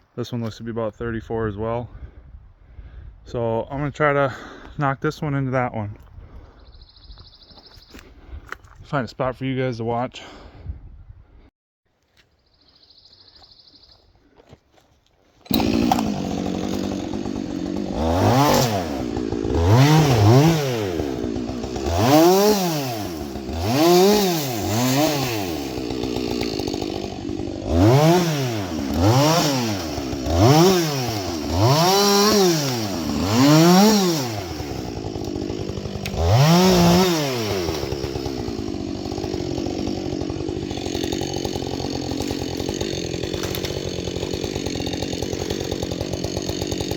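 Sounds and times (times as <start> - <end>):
chainsaw revving: 15.4 - 46.9.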